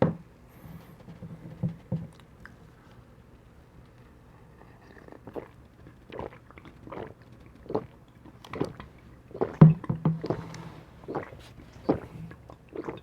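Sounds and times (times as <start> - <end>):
person gulping a drink: 4.6 - 13.0.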